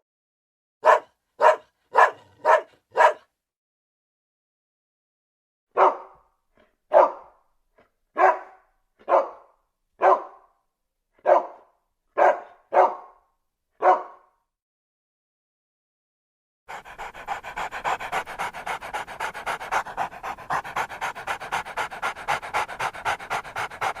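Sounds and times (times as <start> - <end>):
dog barking: 0.8 - 3.3, 5.7 - 7.5, 8.1 - 10.6, 11.2 - 14.4, 16.7 - 24.0.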